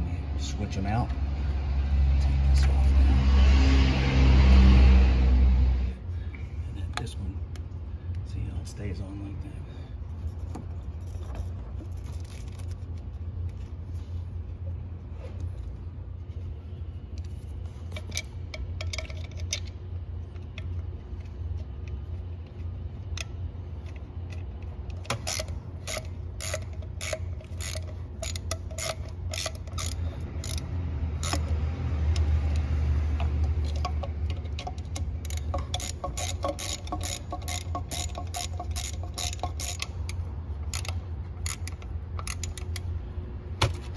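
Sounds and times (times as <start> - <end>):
hand ratchet clicking: 23.2 - 42.9.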